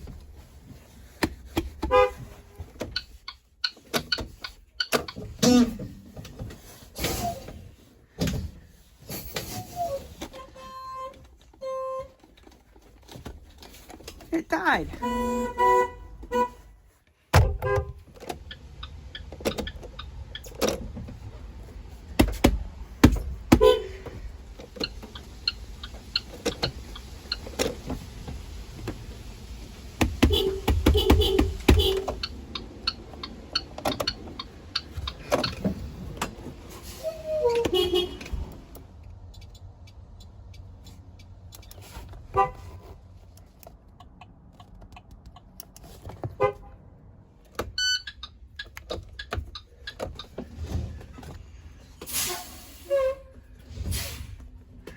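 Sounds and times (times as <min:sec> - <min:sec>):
bus horn toots: 0:01.8 - 0:02.6, 0:10.4 - 0:12.2, 0:14.8 - 0:16.7, 0:17.4 - 0:18.0, 0:23.5 - 0:24.2, 0:30.0 - 0:32.4, 0:36.9 - 0:38.6, 0:42.3 - 0:42.9, 0:46.3 - 0:46.9, 0:52.1 - 0:53.5.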